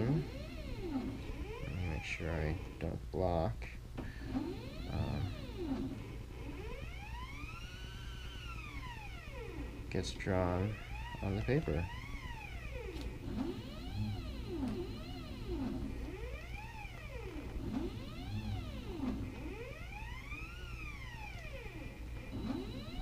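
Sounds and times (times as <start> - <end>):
stepper motors whining: 0.0 - 3.0, 4.0 - 23.0
steady low hum: 0.0 - 23.0.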